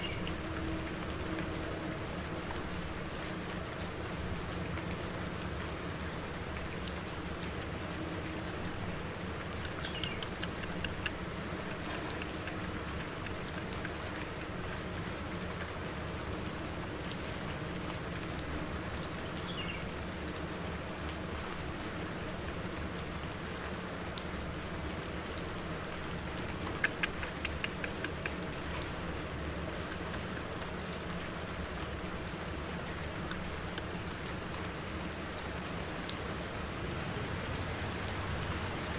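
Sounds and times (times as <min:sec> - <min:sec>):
rain pattering on surfaces: 0:00.0 - 0:38.9
sharp ticks: 0:09.5 - 0:14.9, 0:26.5 - 0:28.8.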